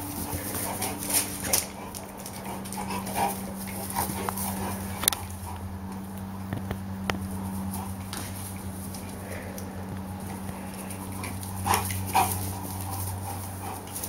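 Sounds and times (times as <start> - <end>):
scuffling: 0.0 - 14.0
steady low hum: 0.0 - 14.0.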